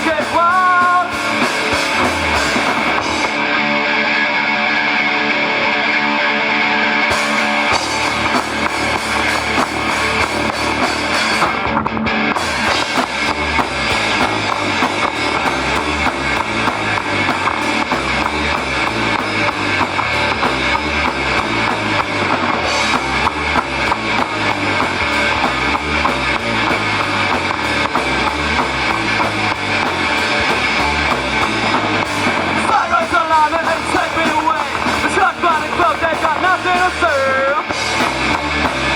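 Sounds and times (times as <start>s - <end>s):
person singing: 0.0s - 2.8s, 32.7s - 37.8s
drum kit beat: 0.0s - 3.5s, 7.1s - 38.9s
electric guitar: 0.0s - 38.9s.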